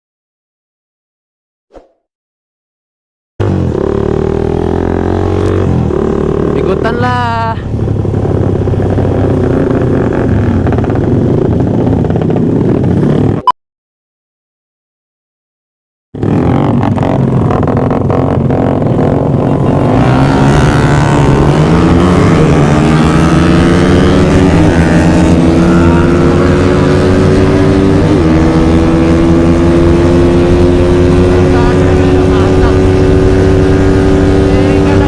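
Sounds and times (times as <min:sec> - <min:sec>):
motorcycle engines at full throttle: 0:03.4 - 0:13.4, 0:16.2 - 0:35.0.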